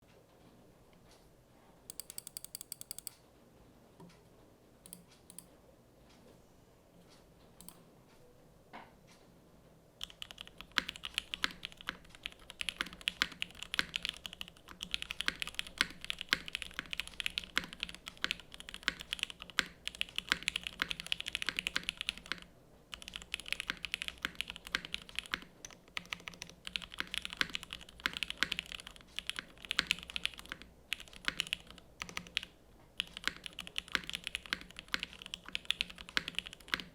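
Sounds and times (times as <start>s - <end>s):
mechanical keyboard typing: 1.9s - 3.2s, 4.9s - 5.5s, 10.0s - 36.9s.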